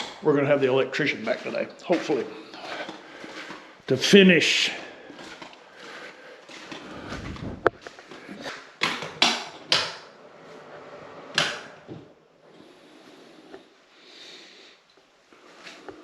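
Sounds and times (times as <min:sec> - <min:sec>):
faint rustling: 0:00.0 - 0:08.7.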